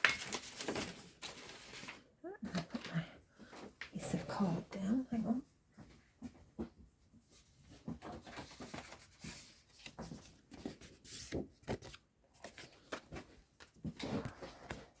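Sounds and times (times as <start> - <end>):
paper rustling: 0.0 - 3.0, 7.7 - 15.0.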